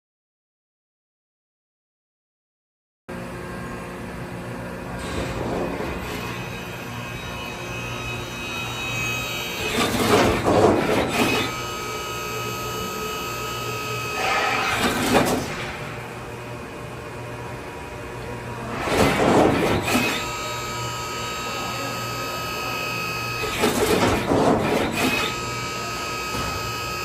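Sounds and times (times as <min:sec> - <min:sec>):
machine motors humming and whining: 0:03.1 - 0:27.0
louder noisy machine bursts: 0:05.0 - 0:16.2, 0:18.7 - 0:27.0.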